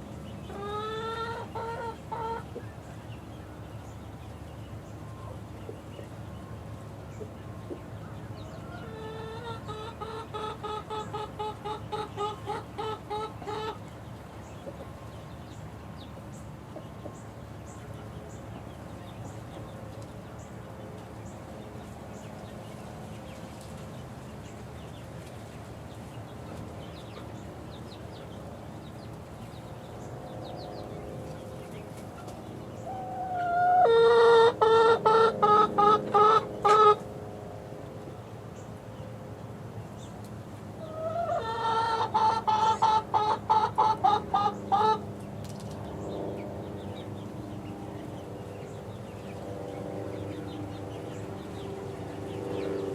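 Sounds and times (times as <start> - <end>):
chicks peeping: 0.0 - 52.9
chicken loud repeated call: 33.0 - 37.0.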